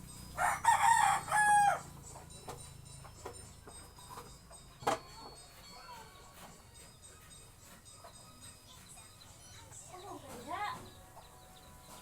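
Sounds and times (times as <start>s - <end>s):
rooster crowing: 0.4s - 1.9s.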